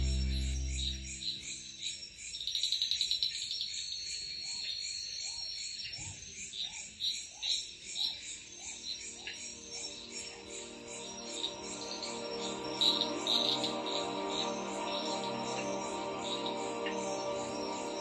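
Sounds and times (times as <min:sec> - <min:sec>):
low held music note: 0:00.0 - 0:01.8
crickets chirping: 0:00.0 - 0:18.0.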